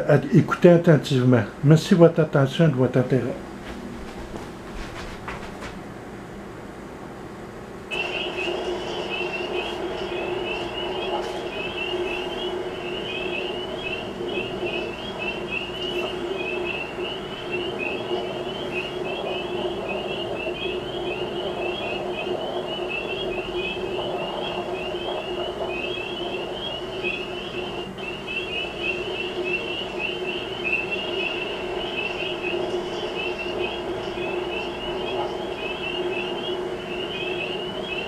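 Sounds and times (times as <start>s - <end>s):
frogs peeping: 7.9s - 38.0s.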